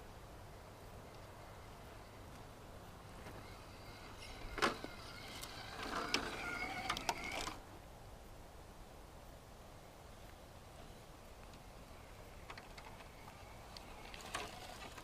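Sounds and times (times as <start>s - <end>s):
electric motor and gears whining: 3.0s - 7.6s, 12.4s - 15.0s.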